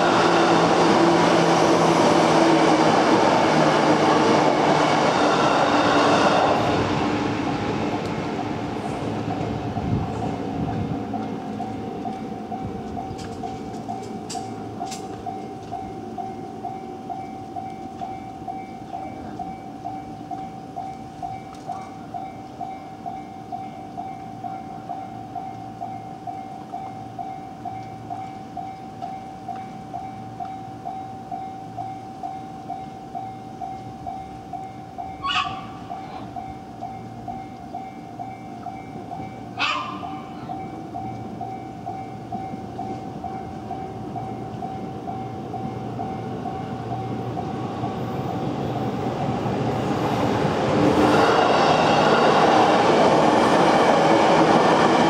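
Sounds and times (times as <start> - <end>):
electric train running noise: 0.0 - 55.0
level crossing warning bell ringing: 7.8 - 49.1.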